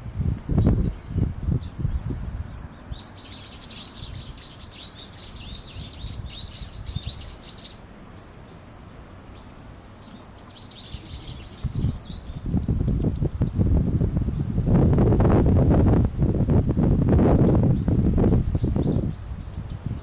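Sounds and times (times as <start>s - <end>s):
songbird singing: 0.0s - 20.0s
wind rumble on microphone: 0.0s - 20.0s.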